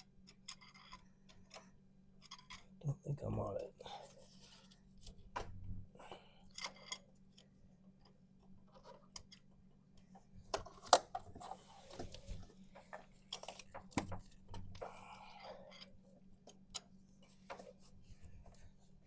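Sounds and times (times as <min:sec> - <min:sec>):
screwdriver clicking and scraping metal: 0:00.0 - 0:02.8
faint low hum: 0:00.0 - 0:19.0.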